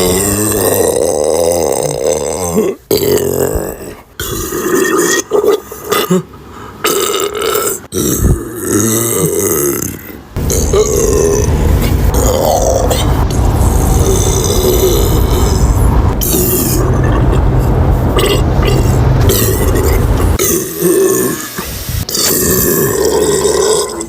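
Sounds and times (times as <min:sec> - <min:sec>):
woman belching: 0:00.0 - 0:11.5, 0:12.1 - 0:13.4, 0:18.1 - 0:24.0.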